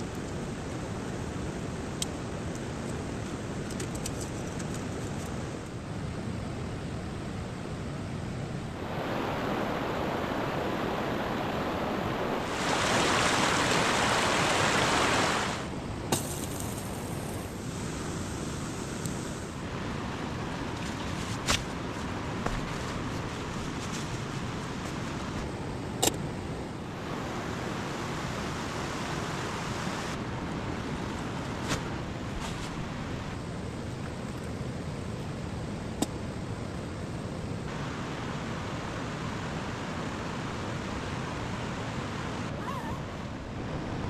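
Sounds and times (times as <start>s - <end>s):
stream water rushing: 8.8s - 26.2s, 26.9s - 33.4s, 37.7s - 44.0s.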